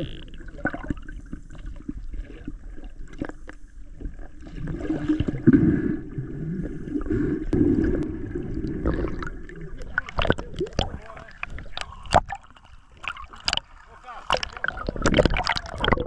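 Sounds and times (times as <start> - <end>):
muffled water gurgling underwater: 0.0 - 16.0.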